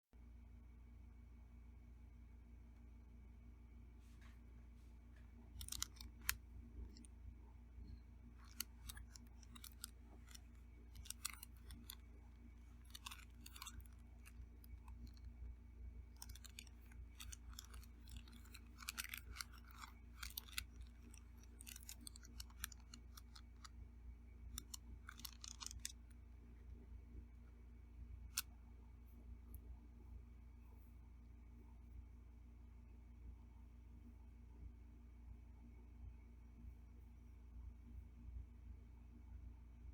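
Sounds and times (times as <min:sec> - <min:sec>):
soft chewing: 0:05.2 - 0:07.2, 0:07.8 - 0:23.8, 0:24.4 - 0:26.2
utensils clicking on a plate: 0:08.4 - 0:15.3, 0:16.2 - 0:23.7.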